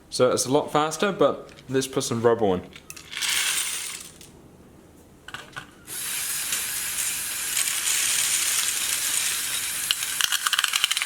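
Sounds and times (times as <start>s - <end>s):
toy motor gears whirring and rattling: 5.9s - 11.0s.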